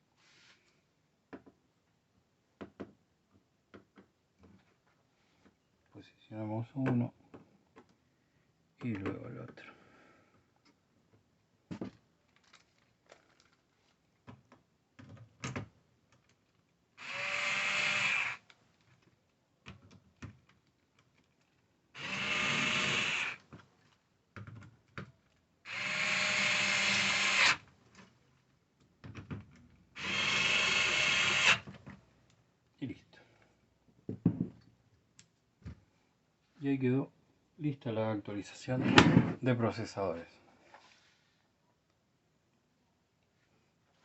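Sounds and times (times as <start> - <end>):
electric screwdriver driving screws: 17.0 - 18.4, 22.0 - 23.4, 25.7 - 27.6, 30.0 - 31.7.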